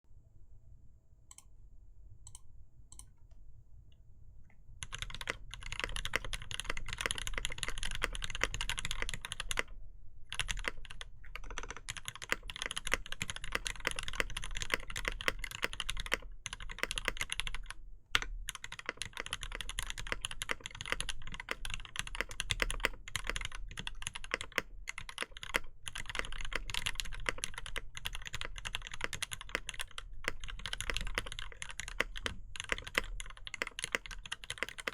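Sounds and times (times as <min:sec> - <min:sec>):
mechanical keyboard typing: 0:04.8 - 0:34.9.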